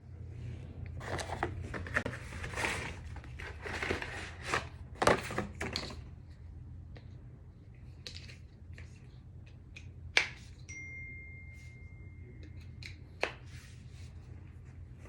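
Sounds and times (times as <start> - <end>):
steady low hum: 0.0 - 15.0
packaging rustling and crinkling: 1.0 - 5.7.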